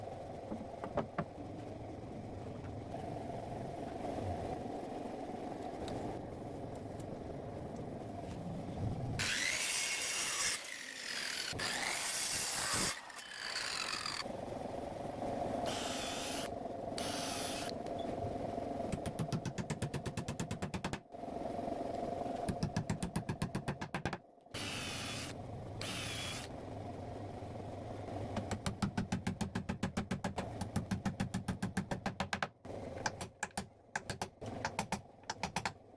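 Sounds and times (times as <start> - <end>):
steady background hum: 0.0 - 35.9
power tool cutting wood: 9.2 - 14.2, 24.6 - 26.5.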